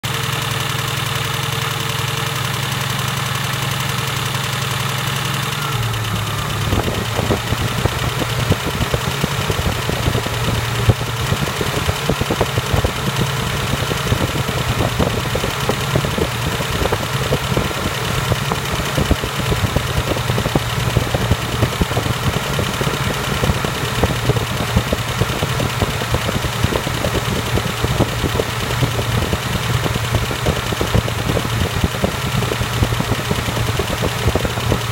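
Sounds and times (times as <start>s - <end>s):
motor humming: 5.6s - 34.9s.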